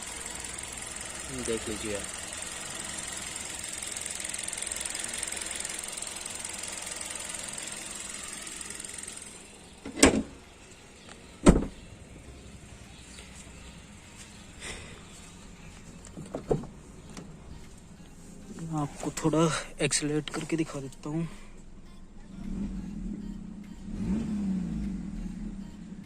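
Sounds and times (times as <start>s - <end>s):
car engine idling: 0.0s - 26.0s
loud thumps: 11.4s - 11.8s.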